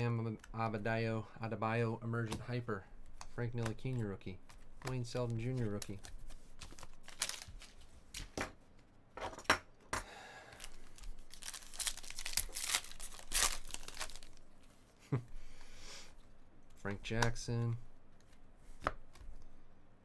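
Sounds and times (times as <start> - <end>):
cards being shuffled: 2.2 - 8.4, 10.6 - 14.8, 16.6 - 19.5
card wrappers ripping and crinkling: 5.0 - 7.9, 10.6 - 14.5.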